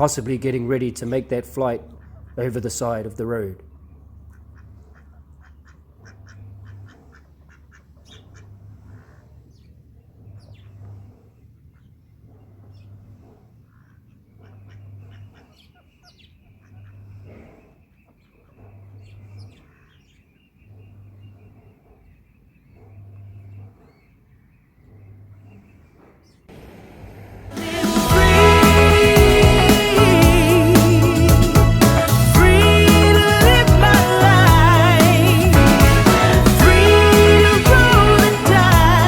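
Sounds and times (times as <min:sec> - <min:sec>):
ducks quacking softly: 0:01.8 - 0:03.0, 0:04.0 - 0:24.1
small birds chirping: 0:03.6 - 0:26.5
low hum: 0:26.5 - 0:39.0.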